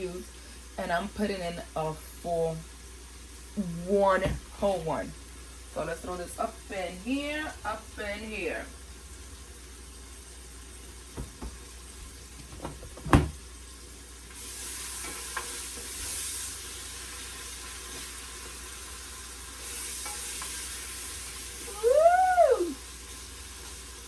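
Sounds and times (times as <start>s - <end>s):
seasoning sizzling in hot oil: 0.0s - 12.5s, 13.3s - 24.0s
person exclaiming: 21.7s - 22.8s.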